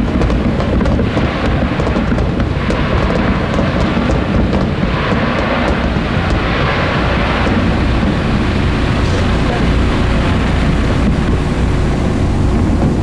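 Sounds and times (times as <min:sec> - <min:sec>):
faint crackles: 0:00.0 - 0:13.0
wind buffeting microphone: 0:00.0 - 0:13.0.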